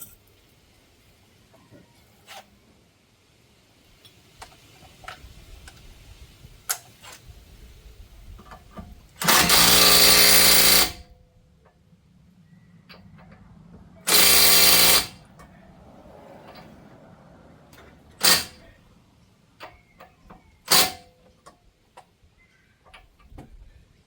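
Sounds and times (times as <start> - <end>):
metallic tool clinks: 0.0 - 0.3
impact wrench bursts: 9.2 - 11.1, 14.0 - 15.5, 17.8 - 18.8, 20.7 - 21.1.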